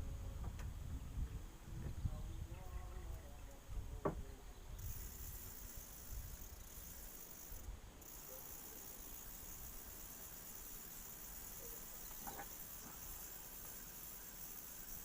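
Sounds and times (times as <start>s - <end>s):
high-pitched insect chirring: 4.8s - 15.0s.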